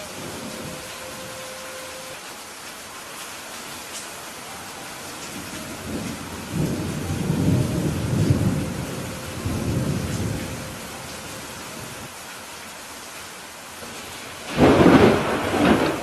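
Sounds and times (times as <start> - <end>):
thunder rumbling: 0.0 - 2.2, 4.9 - 12.1, 14.0 - 16.0
steady rain: 0.0 - 16.0.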